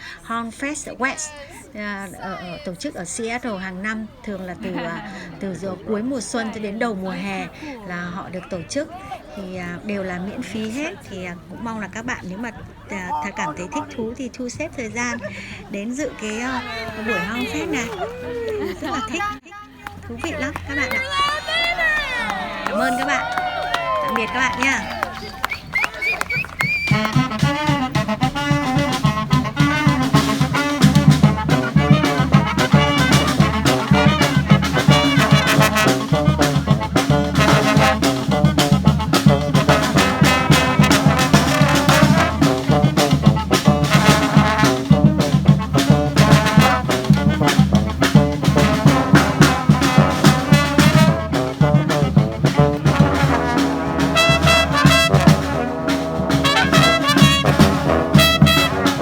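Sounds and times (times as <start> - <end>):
brass band playing: 16.3 - 18.0, 20.5 - 59.0.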